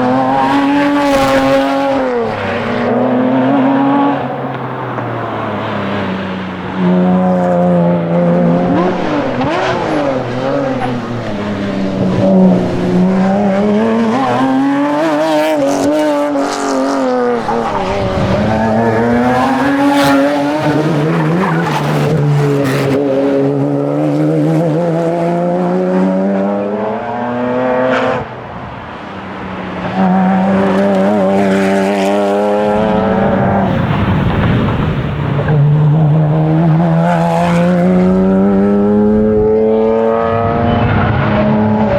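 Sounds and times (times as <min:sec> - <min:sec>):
sports car engine revving: 0:00.0 - 0:28.2.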